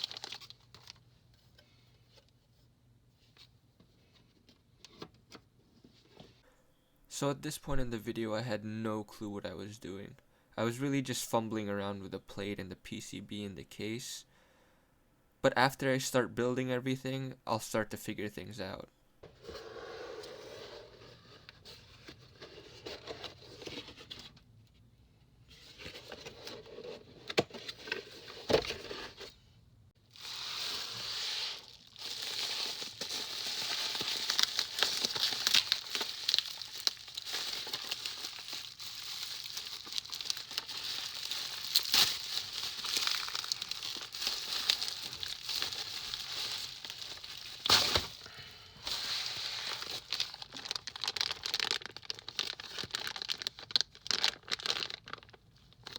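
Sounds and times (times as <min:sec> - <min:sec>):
packaging crinkling and rustling: 0:00.0 - 0:01.6, 0:30.0 - 0:48.3, 0:48.9 - 0:55.9.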